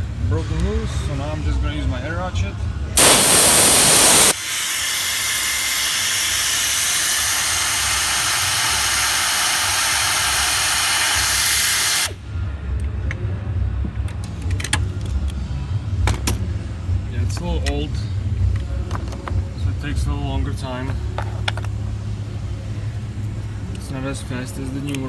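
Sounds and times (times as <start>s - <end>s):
air ratchet hissing: 3.0s - 12.2s.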